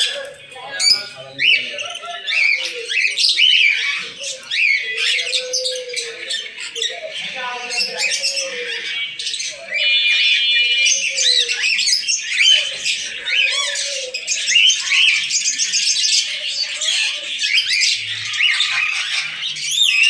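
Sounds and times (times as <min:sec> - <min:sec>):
birds chirping and squawking: 0:00.0 - 0:20.0.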